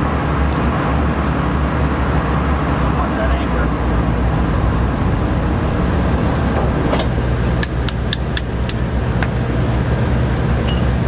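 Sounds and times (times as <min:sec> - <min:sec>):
machinery humming: 0:00.0 - 0:11.0.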